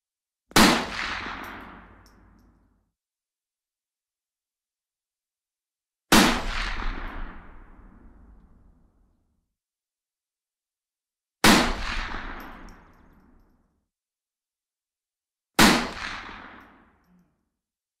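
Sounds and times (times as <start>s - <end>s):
rifle shots echoing: 15.6s - 16.8s.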